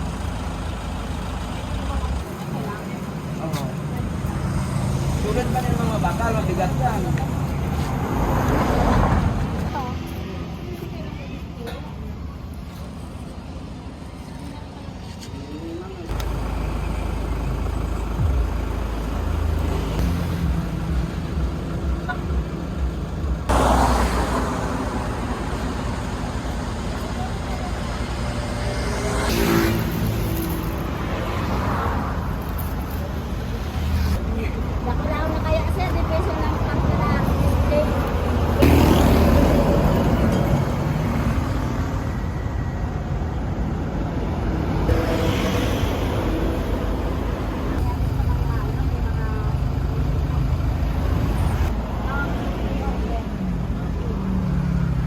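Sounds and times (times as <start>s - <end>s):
road noise: 0.0s - 55.0s
vehicle engine rumbling: 0.0s - 55.0s
loud rush of noise: 36.6s - 53.3s.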